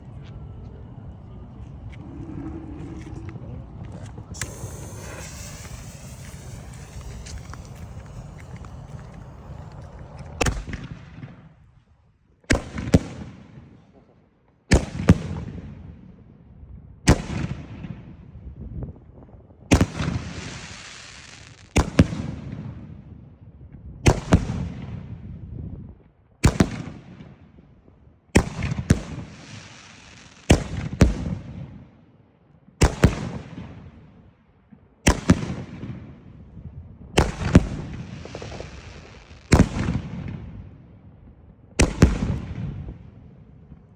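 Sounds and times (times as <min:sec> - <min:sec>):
lingering firework hiss: 0:00.0 - 0:11.6, 0:19.8 - 0:21.8, 0:28.5 - 0:30.8, 0:37.2 - 0:40.5
firework volleys banging: 0:00.0 - 0:11.7, 0:37.2 - 0:40.6.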